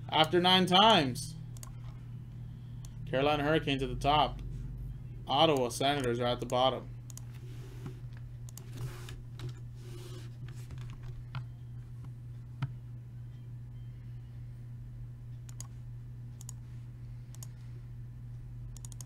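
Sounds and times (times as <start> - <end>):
low electrical hum: 0.0 - 19.0
keyboard and mouse clicks: 15.5 - 15.7, 17.3 - 17.5, 18.8 - 19.0.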